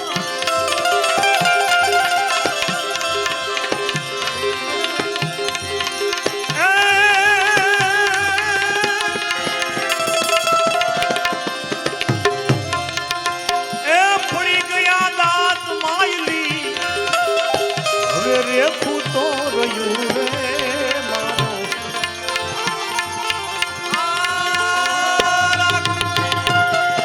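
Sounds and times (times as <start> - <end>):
devotional folk music: 0.0 - 27.0
sliding held melody notes: 0.0 - 27.0
tabla drumming: 0.0 - 27.0.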